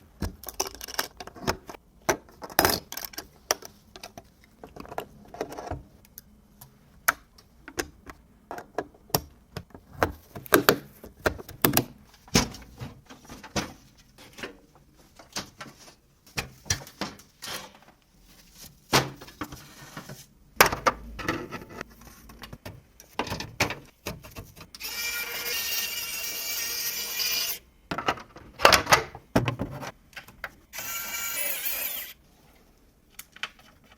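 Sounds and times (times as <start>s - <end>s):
small power tool whirring: 24.8s - 27.6s, 30.7s - 32.2s.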